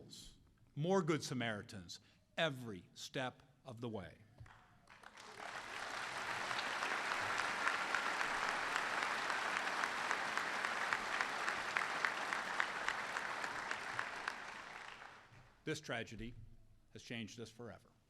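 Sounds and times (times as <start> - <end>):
audience applauding: 4.8 - 15.3.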